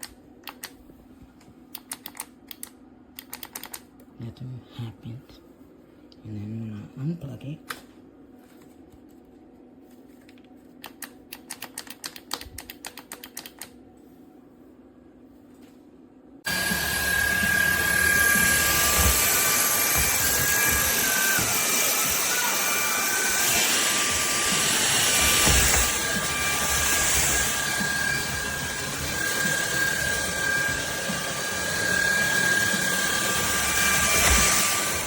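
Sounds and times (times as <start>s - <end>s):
vacuum motor whining: 16.5s - 35.0s.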